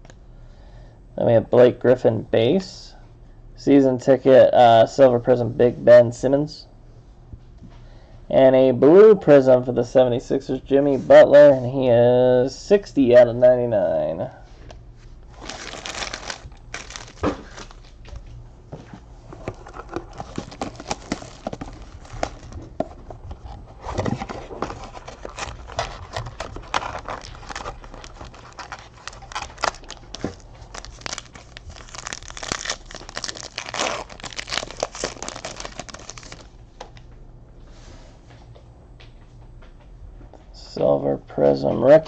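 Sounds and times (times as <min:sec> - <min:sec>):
foil wrapper tearing and crinkling: 0:15.4 - 0:18.0, 0:19.6 - 0:22.6, 0:24.1 - 0:36.5.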